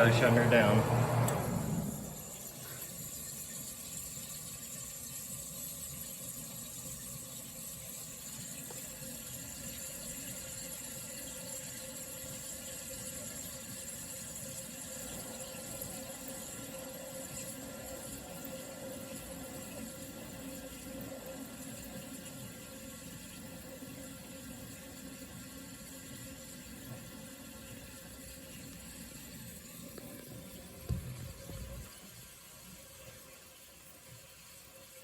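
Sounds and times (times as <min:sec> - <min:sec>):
refrigerant hissing and trickling: 0:00.0 - 0:35.0.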